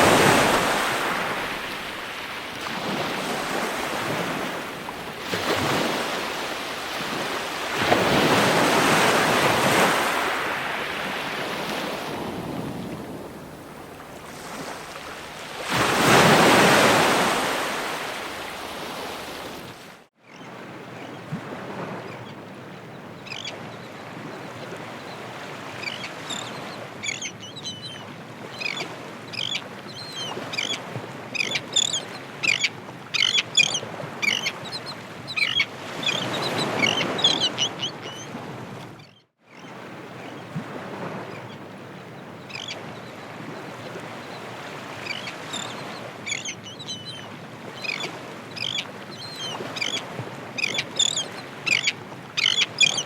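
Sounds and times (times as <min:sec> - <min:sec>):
ocean surf washing: 0:00.0 - 0:20.1
birds calling sharply: 0:50.6 - 0:53.0.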